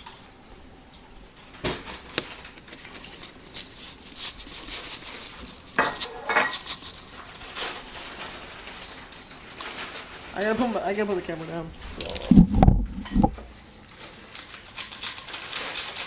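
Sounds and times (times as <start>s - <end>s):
dishes and utensils clattering: 5.8s - 8.3s.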